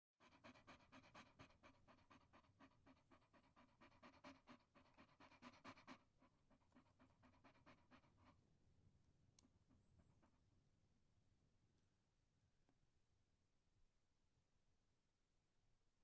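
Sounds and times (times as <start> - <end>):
dog panting: 0.2 - 8.6.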